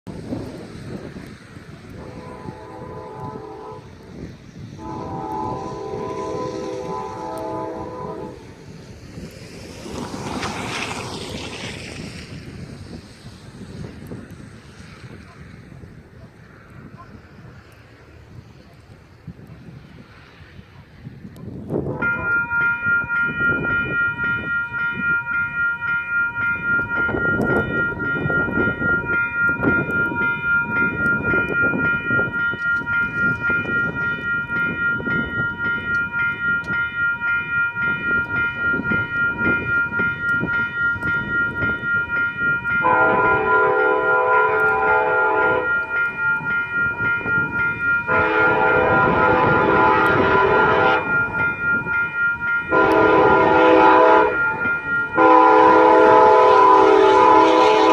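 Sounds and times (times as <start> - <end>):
railroad crossing bell ringing: 0.1 - 18.8, 21.4 - 57.9
train horn blasts: 1.9 - 8.6, 41.9 - 51.6, 52.2 - 57.9.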